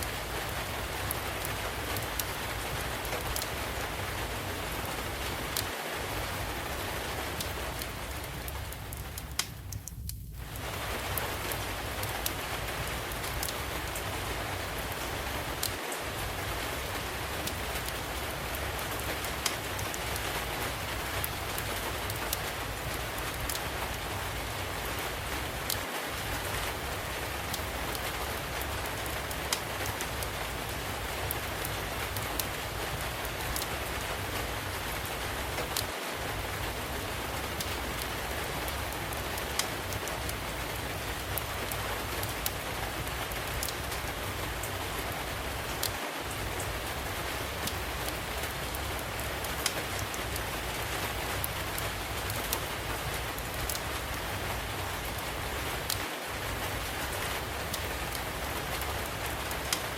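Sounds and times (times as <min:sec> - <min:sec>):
steady rain hiss: 0:00.0 - 0:59.9
wood fire crackling: 0:00.0 - 0:59.9.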